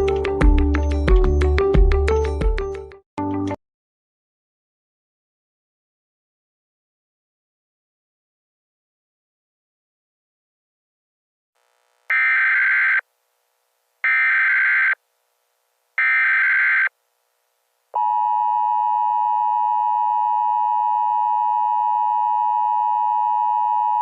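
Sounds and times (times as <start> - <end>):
screechy digital data tones: 12.1 - 13.0, 14.1 - 15.0.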